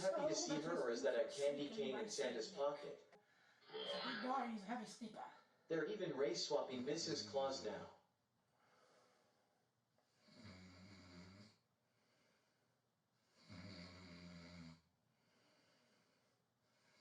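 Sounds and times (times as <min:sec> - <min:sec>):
man snoring: 0:10.2 - 0:11.6, 0:13.4 - 0:14.8.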